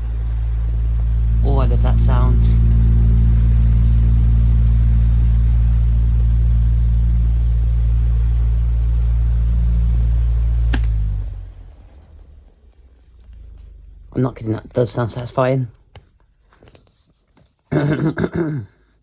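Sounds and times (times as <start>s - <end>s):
electric fan motor humming: 0.0s - 16.0s
sharp click: 10.7s - 11.0s.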